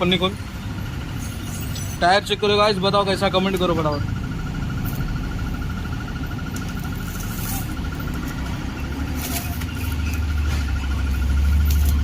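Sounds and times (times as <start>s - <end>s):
vehicle engine rumbling: 0.0s - 12.0s.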